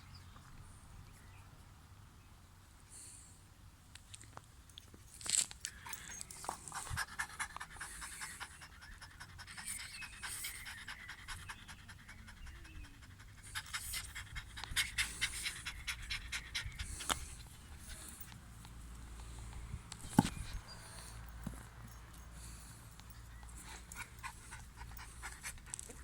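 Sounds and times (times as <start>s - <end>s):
dog panting rapidly: 5.9s - 18.4s, 23.6s - 26.0s.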